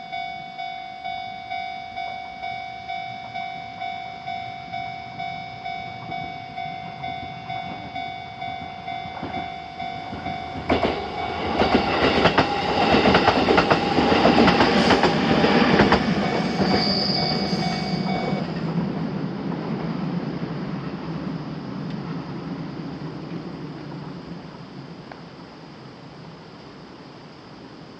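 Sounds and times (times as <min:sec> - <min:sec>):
level crossing alarm ringing: 0:00.0 - 0:18.5
train rumble: 0:01.0 - 0:27.0
train wheels clicking on rail joints: 0:05.3 - 0:18.9.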